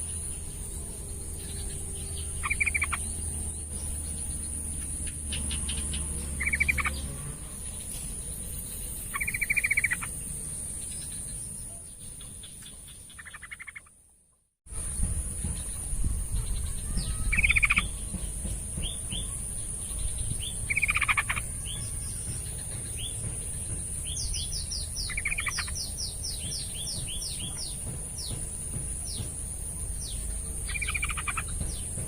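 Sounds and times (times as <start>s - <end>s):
bird singing warbling phrases: 1.4s - 7.2s, 9.1s - 10.2s, 16.2s - 28.4s, 30.0s - 32.0s.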